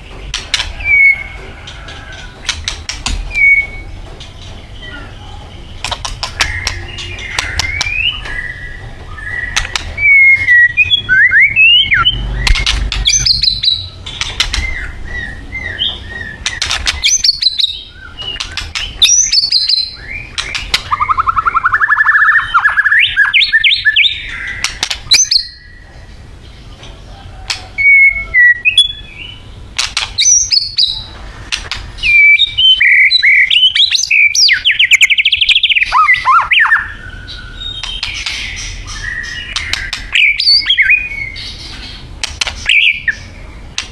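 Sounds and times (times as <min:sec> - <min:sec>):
bird singing varied song: 0:00.0 - 0:43.9
sharp bird clicking notes: 0:02.4 - 0:03.7, 0:05.8 - 0:08.6, 0:09.3 - 0:11.0, 0:12.0 - 0:14.9, 0:15.7 - 0:25.5, 0:29.7 - 0:32.2, 0:39.4 - 0:41.0, 0:41.7 - 0:43.2.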